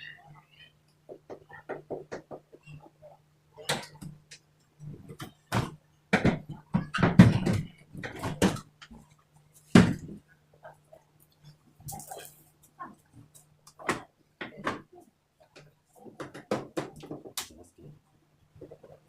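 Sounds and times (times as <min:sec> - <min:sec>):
knocks and rattles of panels: 0:05.0 - 0:08.7.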